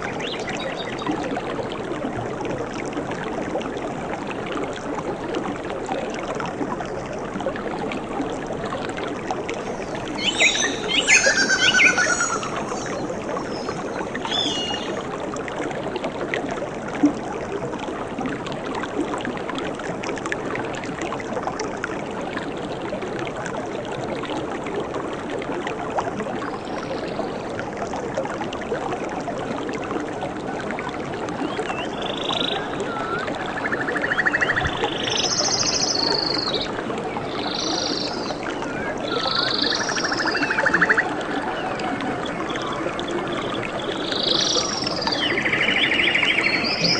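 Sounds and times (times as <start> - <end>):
flowing water rushing: 9.6 - 15.1
high bird chirps: 9.6 - 15.1
rattling pulsed animal calls: 9.7 - 15.0.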